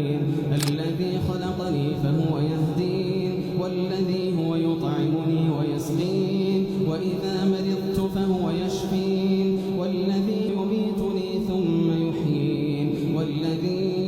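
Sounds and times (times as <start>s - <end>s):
man chanting: 0.0s - 14.0s.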